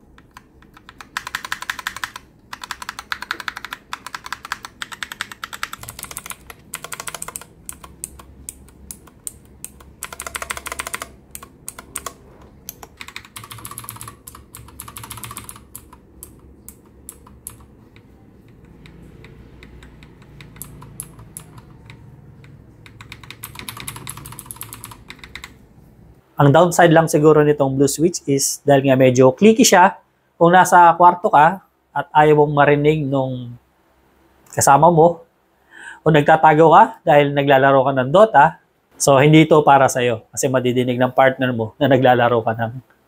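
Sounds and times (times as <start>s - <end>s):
fast typing on mechanical keyboard: 0.0s - 25.6s.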